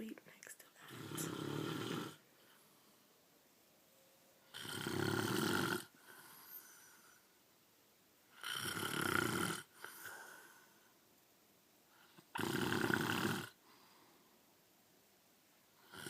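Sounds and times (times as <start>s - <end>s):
man snoring: 0.9s - 2.2s, 4.5s - 7.2s, 8.4s - 10.6s, 12.2s - 13.6s
quiet breath: 2.1s - 4.6s, 5.8s - 7.5s, 9.6s - 11.1s, 13.5s - 14.7s.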